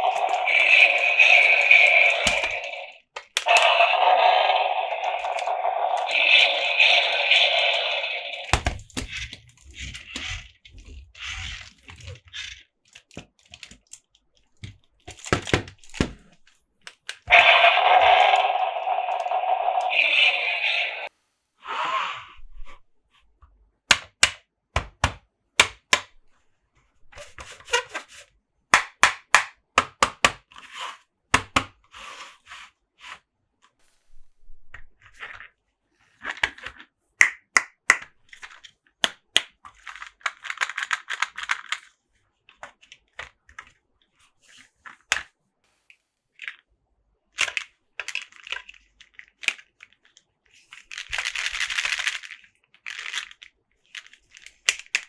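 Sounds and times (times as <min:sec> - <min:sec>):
plastic toy clicks and taps: 0:00.0 - 0:09.4, 0:14.6 - 0:16.2, 0:23.9 - 0:26.2, 0:28.7 - 0:30.6, 0:31.4 - 0:31.8, 0:36.4 - 0:41.9.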